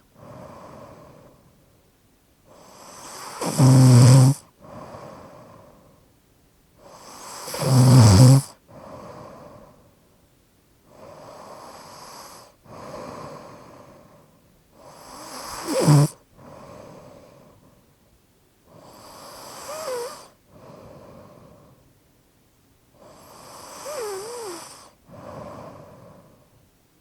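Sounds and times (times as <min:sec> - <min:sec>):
person snoring: 0:02.5 - 0:05.8, 0:06.9 - 0:09.7, 0:14.8 - 0:17.4, 0:18.7 - 0:21.7, 0:23.0 - 0:26.4.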